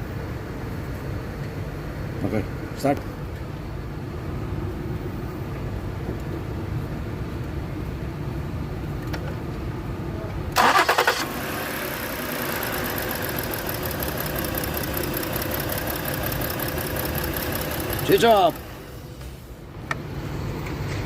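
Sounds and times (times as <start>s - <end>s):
starter cranking engine: 10.6s - 18.7s
engine running with ticking: 11.2s - 20.0s.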